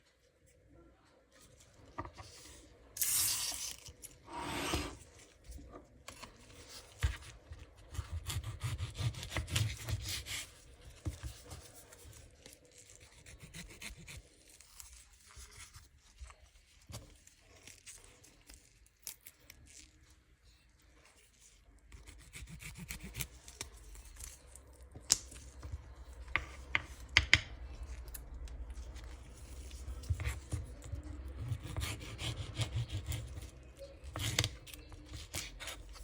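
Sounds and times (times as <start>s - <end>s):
food preparation scraping: 2.0s - 10.6s.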